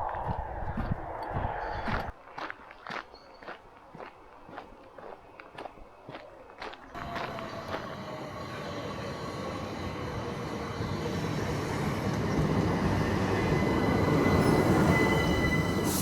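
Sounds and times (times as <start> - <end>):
train approaching: 0.0 - 2.1, 6.9 - 16.0.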